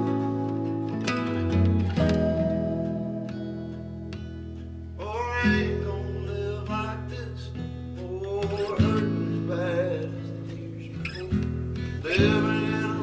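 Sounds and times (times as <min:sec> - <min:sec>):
strummed acoustic guitar: 0:00.0 - 0:13.0
person singing: 0:12.0 - 0:13.0.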